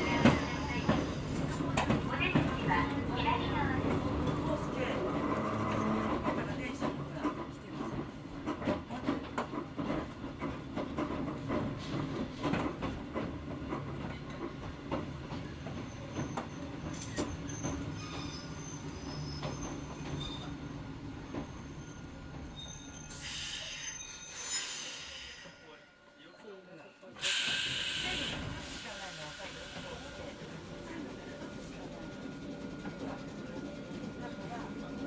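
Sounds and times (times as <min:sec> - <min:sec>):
faint high wheel squeal: 0:15.9 - 0:20.7, 0:21.3 - 0:25.6.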